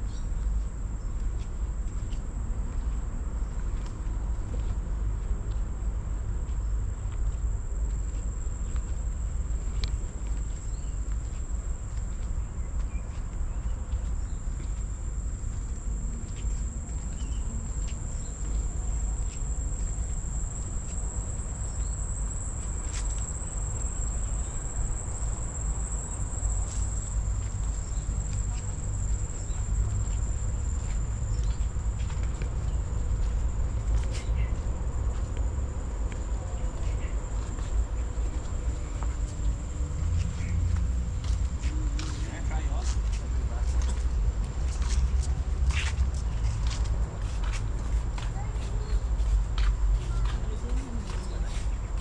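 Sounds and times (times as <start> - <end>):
insects trilling: 12.4 - 44.4.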